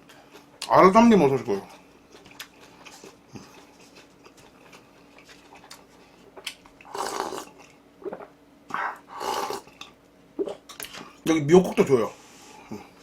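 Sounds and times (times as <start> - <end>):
quiet chewing: 1.7 - 10.0
loud noisy mouth sound: 6.9 - 9.7.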